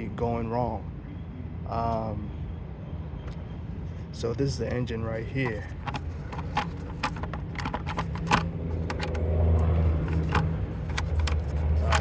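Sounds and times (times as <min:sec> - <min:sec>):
car engine idling: 0:05.4 - 0:12.0
irregular engine clicks: 0:05.8 - 0:12.0.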